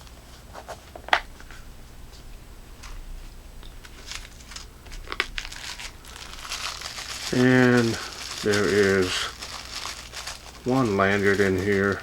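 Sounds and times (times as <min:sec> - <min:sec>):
packaging crinkling: 0:03.7 - 0:12.0.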